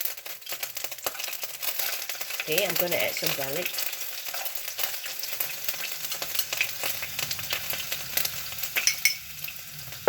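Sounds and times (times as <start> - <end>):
garlic sizzling in oil: 0.0 - 10.0
spatula scraping a pan: 0.5 - 2.4.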